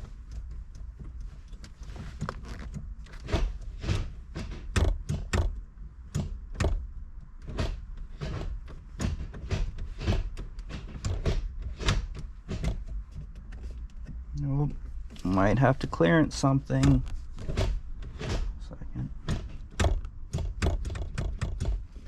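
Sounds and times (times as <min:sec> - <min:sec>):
plastic trim clicking and knocking: 0:02.2 - 0:14.2, 0:19.2 - 0:22.0.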